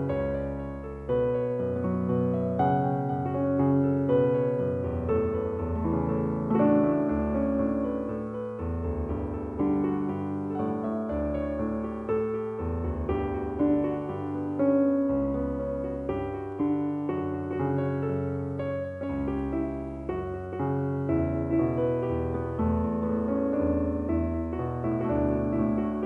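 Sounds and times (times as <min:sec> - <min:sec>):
piano music: 0:00.0 - 0:26.0.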